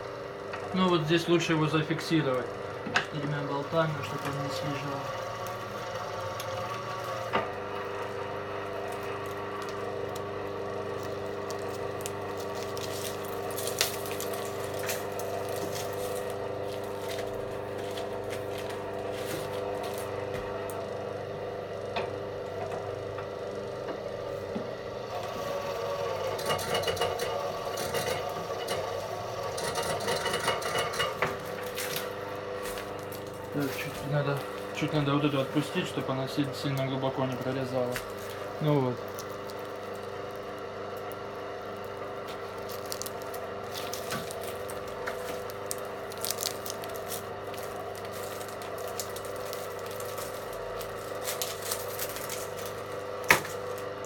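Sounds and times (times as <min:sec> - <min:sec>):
electric motor humming: 0:00.0 - 0:54.0
cable scraping and rattling clicks: 0:10.9 - 0:21.0, 0:26.2 - 0:40.4, 0:41.8 - 0:53.9.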